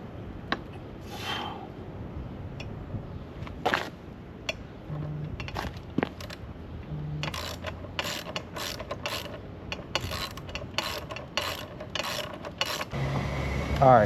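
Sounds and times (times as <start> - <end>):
ratchet wrench clicking: 7.2 - 12.9.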